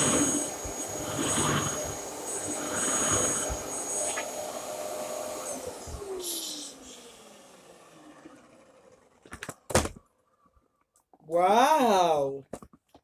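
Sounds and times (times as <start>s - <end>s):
vacuum cleaner winding down: 0.0s - 9.3s.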